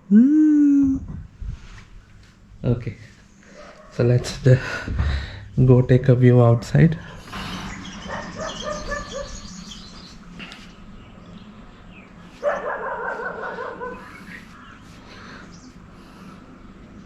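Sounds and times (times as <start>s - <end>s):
dog whining: 8.0s - 9.6s.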